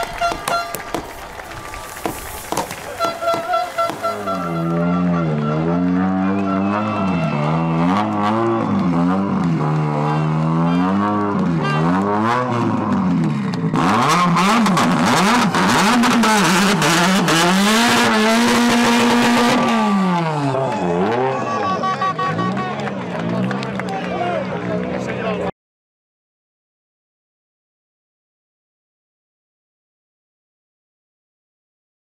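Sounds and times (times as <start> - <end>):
rush of noise with crackles: 0.0 - 3.0
rally car engine revving: 1.9 - 25.1.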